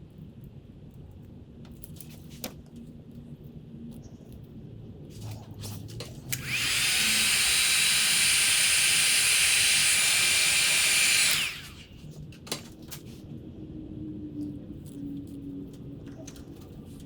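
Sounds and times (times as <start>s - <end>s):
heat gun blowing air: 6.3s - 12.0s.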